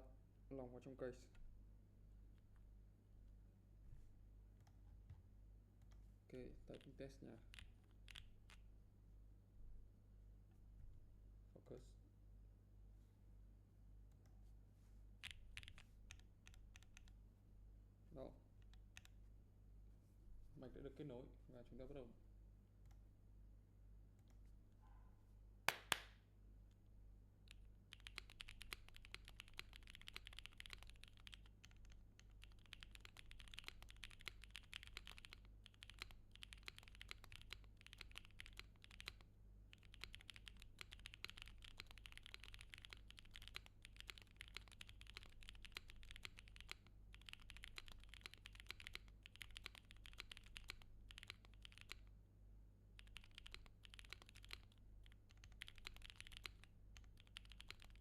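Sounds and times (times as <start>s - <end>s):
low electrical hum: 0.0s - 58.0s
mechanical keyboard typing: 7.5s - 8.6s, 15.2s - 17.2s, 27.5s - 52.1s, 53.0s - 58.0s.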